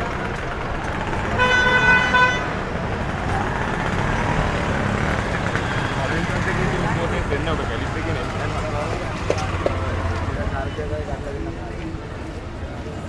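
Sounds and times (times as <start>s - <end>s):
street traffic: 0.0s - 13.0s
vehicle horn toot: 1.4s - 2.6s.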